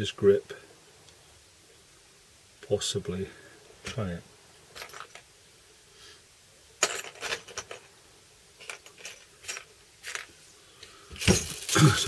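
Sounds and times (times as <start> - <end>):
small metal parts clinking: 4.7 - 5.3, 6.8 - 7.9, 8.6 - 12.0.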